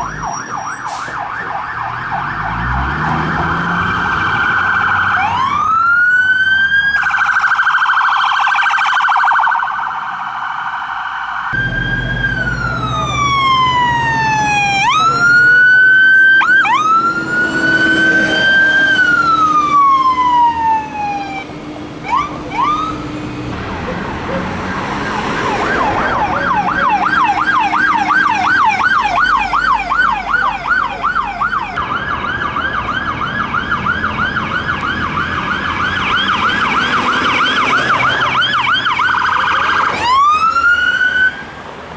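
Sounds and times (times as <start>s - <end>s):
heavy engine rumbling: 0.0s - 5.4s, 11.6s - 19.8s, 21.7s - 40.9s
fire engine siren: 0.0s - 41.7s.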